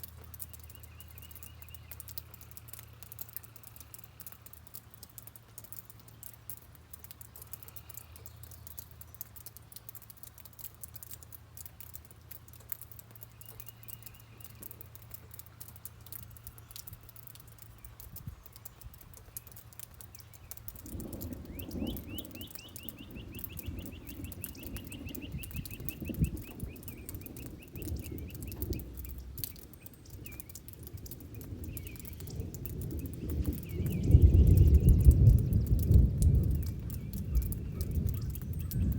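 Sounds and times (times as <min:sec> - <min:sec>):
birds chirping: 0:00.0 - 0:38.9
rain pattering: 0:00.0 - 0:38.9
distant thunder rumble: 0:20.5 - 0:38.9.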